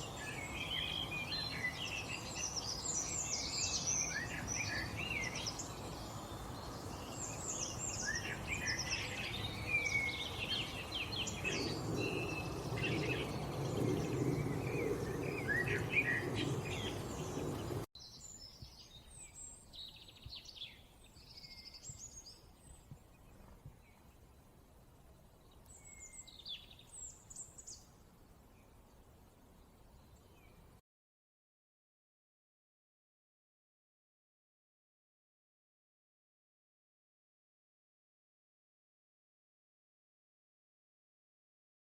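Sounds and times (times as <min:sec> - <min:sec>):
songbirds chirping and trilling: 0:00.0 - 0:30.8.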